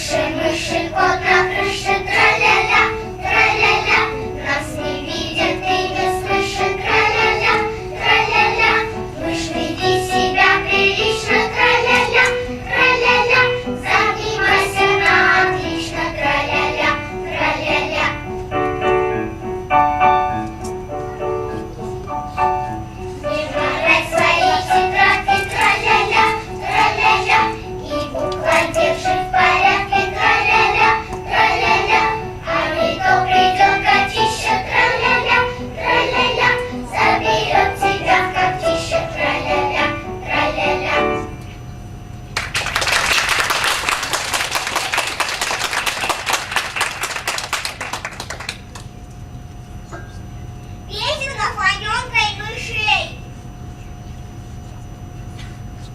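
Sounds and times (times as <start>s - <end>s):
children's choir singing: 0.0s - 19.1s, 21.3s - 41.4s
audience applause: 42.4s - 48.9s.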